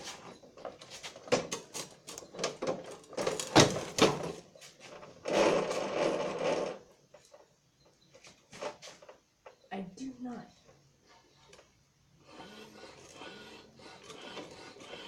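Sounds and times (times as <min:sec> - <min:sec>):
hands handling lawn mower: 0:00.0 - 0:05.9
rattling scrape: 0:05.2 - 0:06.8.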